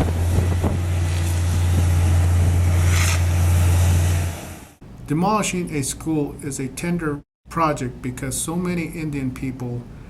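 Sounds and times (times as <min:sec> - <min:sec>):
demolition machinery engine drone: 0:00.0 - 0:04.8.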